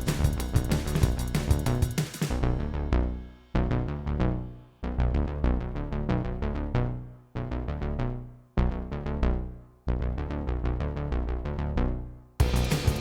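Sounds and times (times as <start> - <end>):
electronic synth music: 12.4 - 13.0.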